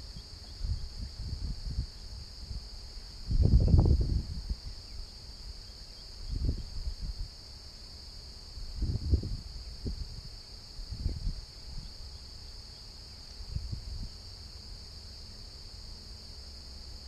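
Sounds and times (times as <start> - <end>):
wind rumbling on microphone: 0.0 - 7.4, 8.2 - 12.4, 13.3 - 14.4
insects chorus: 0.0 - 17.0.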